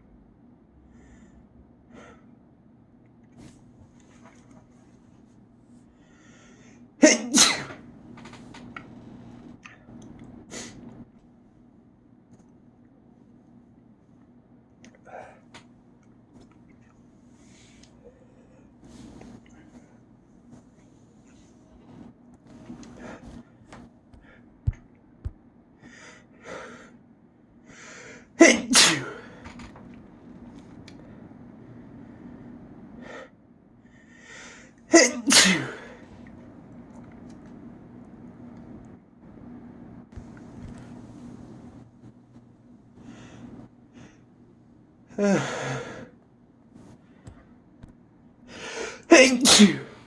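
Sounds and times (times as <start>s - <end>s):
person breathing: 0.9s - 2.3s, 5.9s - 6.9s, 25.8s - 27.0s, 27.6s - 28.3s, 33.0s - 34.8s, 43.0s - 44.3s, 48.5s - 49.1s
person sneezing: 7.0s - 7.8s, 28.4s - 29.4s, 34.9s - 36.0s, 48.6s - 50.0s.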